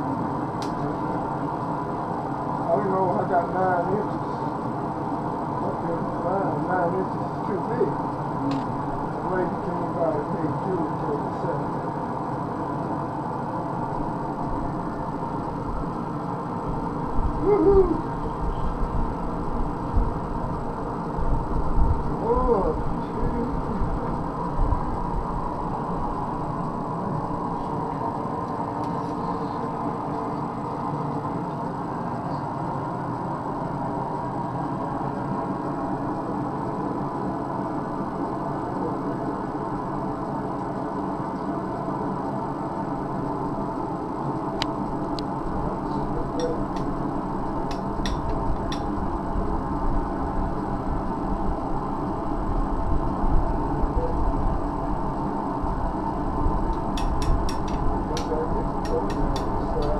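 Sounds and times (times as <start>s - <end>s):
forge droning hum: 0.0s - 59.9s
person shouting woohoo: 17.4s - 18.1s.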